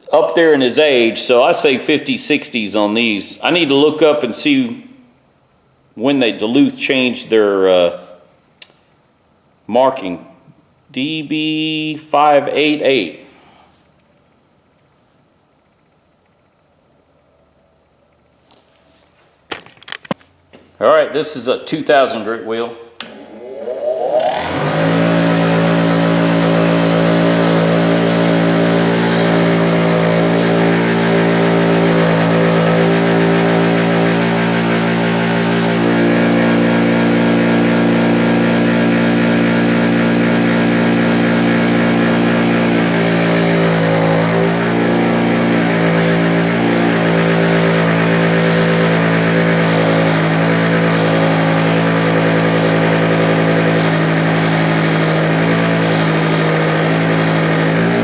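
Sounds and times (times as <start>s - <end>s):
bench grinder motor humming: 23.0s - 58.0s.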